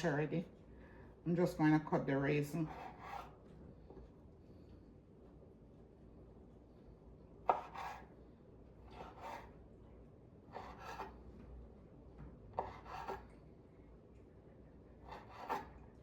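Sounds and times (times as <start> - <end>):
knife cutting on cutting board: 2.6 - 3.4, 7.5 - 8.1, 8.9 - 9.6, 10.5 - 11.2, 12.6 - 13.2, 15.0 - 15.8.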